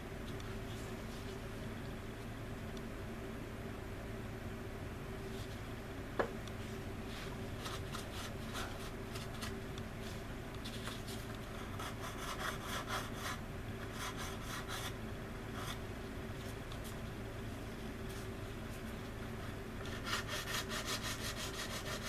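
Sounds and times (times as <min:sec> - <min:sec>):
steady low hum: 0:00.0 - 0:22.0
sanding stick scratching: 0:11.7 - 0:15.0, 0:19.9 - 0:22.0.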